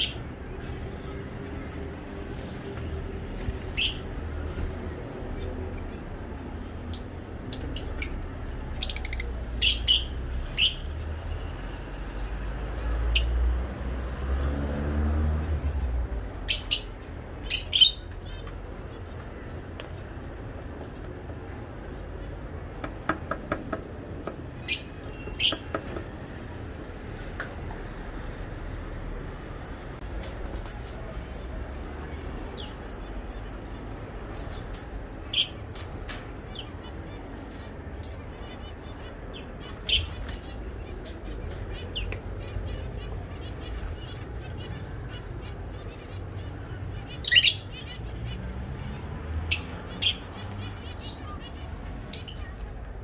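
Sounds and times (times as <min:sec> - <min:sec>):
small birds chirping: 0:03.2 - 0:11.6, 0:15.4 - 0:26.1, 0:26.8 - 0:53.0
loud sharp bird calls: 0:30.6 - 0:52.7.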